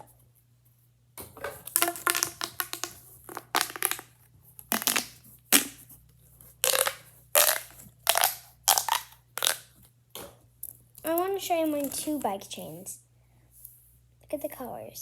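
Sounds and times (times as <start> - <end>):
plastic toys crunching: 1.7 - 4.1, 4.7 - 5.8, 6.6 - 9.8.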